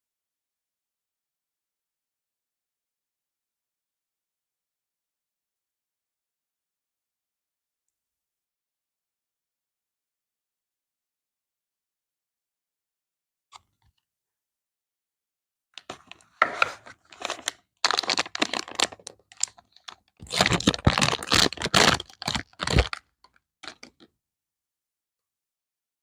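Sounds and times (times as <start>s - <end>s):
packaging crinkling and tearing: 15.8s - 23.0s, 23.6s - 23.9s.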